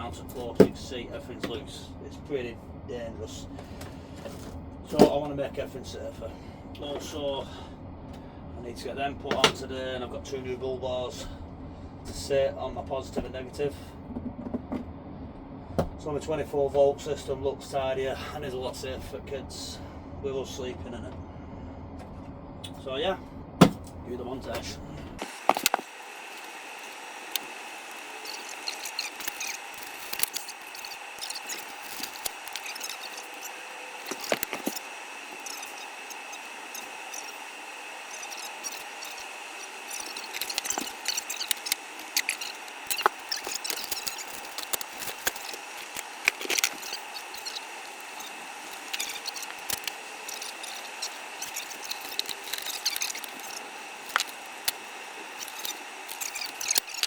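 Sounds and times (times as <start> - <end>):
steady hum: 0.0 - 57.0
tool clicks and rattles: 25.2 - 37.3, 39.9 - 57.0.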